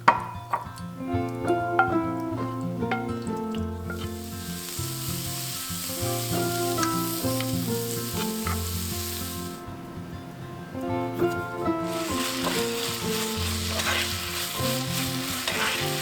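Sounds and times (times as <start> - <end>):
background music: 0.0 - 16.0
food sizzling in a pan: 2.8 - 9.7, 11.2 - 16.0.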